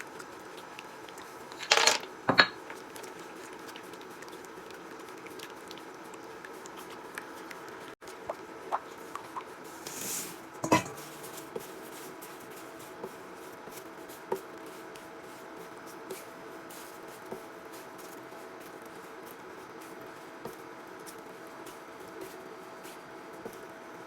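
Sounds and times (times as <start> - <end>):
kitchenware clicks and taps: 1.6 - 2.7, 10.6 - 11.0
loud kitchenware clink: 10.6 - 11.0.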